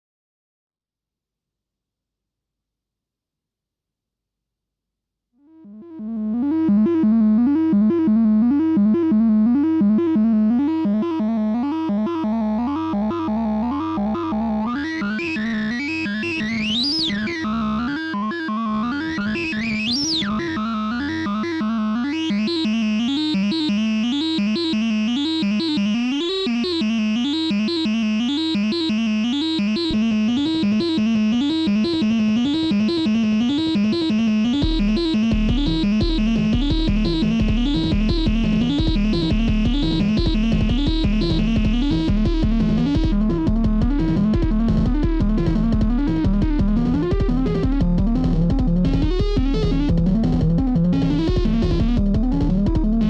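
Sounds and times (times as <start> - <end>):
synthesizer bass pattern: 5.6 - 53.0
drum machine: 15.0 - 17.5, 26.8 - 53.0.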